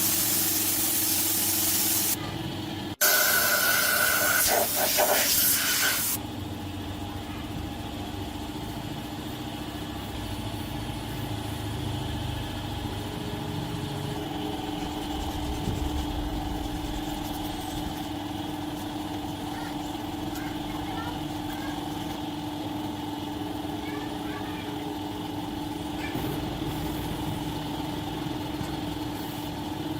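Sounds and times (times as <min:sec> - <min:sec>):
loud spraying hiss: 0:00.0 - 0:02.2, 0:03.0 - 0:06.2
steady mechanical hum: 0:00.0 - 0:29.9.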